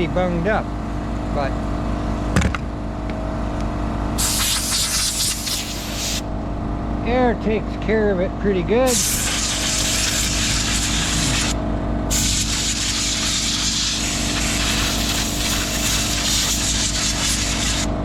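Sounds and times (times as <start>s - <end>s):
compressed air blow gun hissing: 4.2s - 6.3s, 8.9s - 17.9s.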